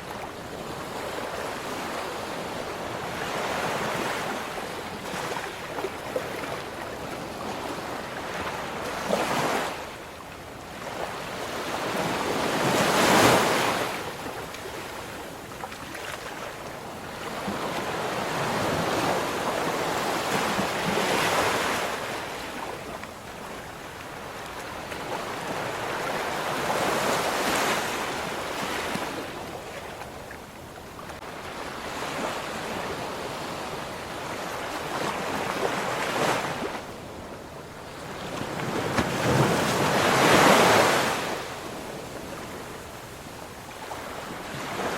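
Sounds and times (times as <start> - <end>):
ocean waves breaking: 10.8 - 44.9.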